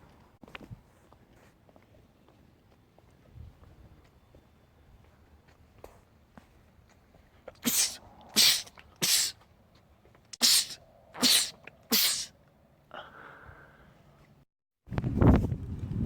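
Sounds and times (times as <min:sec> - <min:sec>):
man sneezing: 0:07.6 - 0:09.4, 0:10.4 - 0:12.3.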